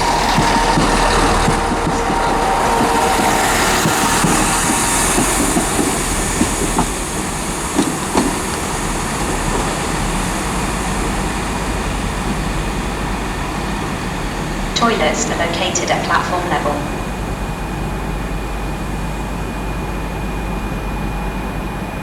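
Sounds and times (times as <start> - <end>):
wheels clicking over rail joints: 0.0 - 14.4
train rumbling: 0.0 - 22.0.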